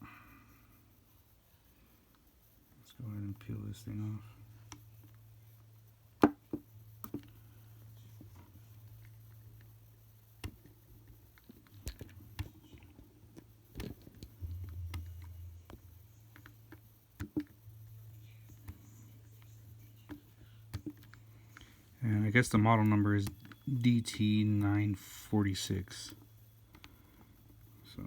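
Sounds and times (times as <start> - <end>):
clicks and taps on plastic: 6.2 - 7.3, 20.0 - 21.7.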